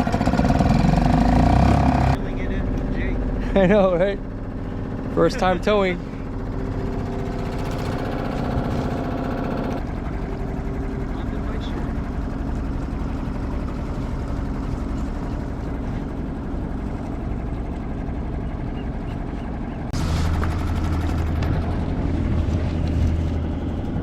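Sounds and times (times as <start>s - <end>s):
small boat motor running: 0.0s - 24.0s.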